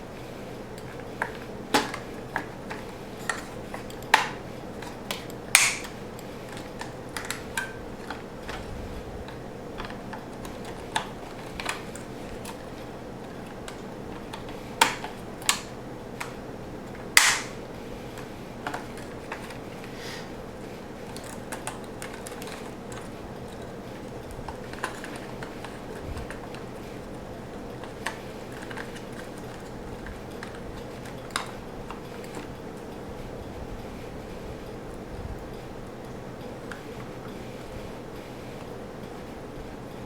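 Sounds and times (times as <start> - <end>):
faint steady hum: 0.0 - 40.0
plastic clicks and taps: 0.8 - 8.6, 13.3 - 16.4, 17.2 - 17.6.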